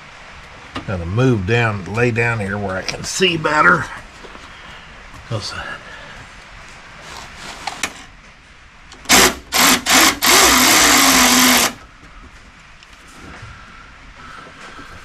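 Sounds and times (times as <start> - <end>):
power drill whirring: 9.1 - 11.8.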